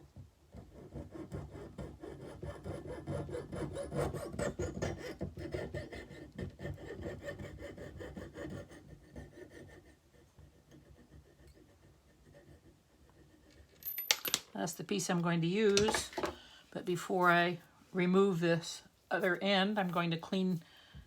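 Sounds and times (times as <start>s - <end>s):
saw rasping through metal tubing: 0.6s - 13.7s.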